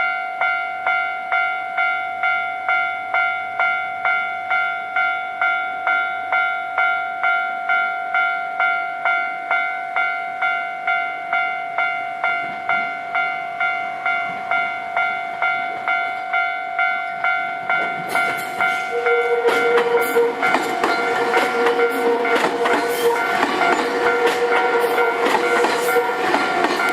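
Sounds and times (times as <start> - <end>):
level crossing bell clanging: 0.0 - 26.9
train wheels on rails: 5.4 - 26.9.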